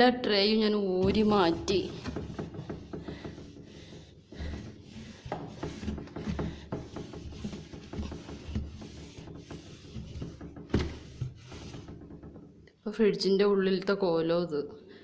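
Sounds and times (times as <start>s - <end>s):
rubbing plastic fridge parts: 1.0s - 12.7s.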